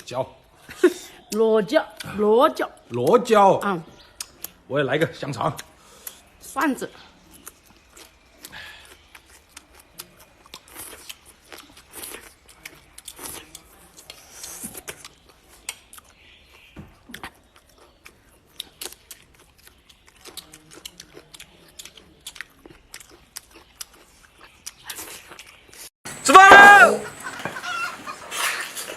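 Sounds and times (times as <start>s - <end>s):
person chewing crunchy food: 7.2s - 26.2s.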